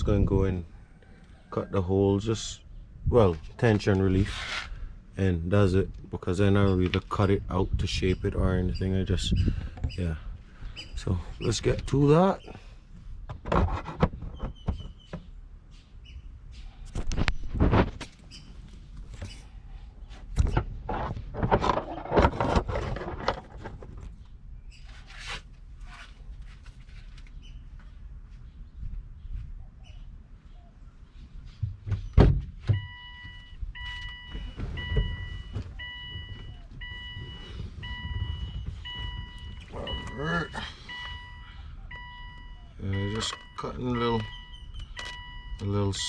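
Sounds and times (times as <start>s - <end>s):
car warning chime beeping: 32.7s - 46.0s.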